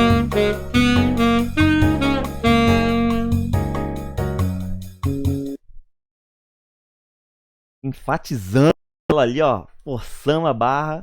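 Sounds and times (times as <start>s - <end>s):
saxophone holding a note: 0.0s - 3.6s
jazz keyboard chords and bass: 0.0s - 5.6s.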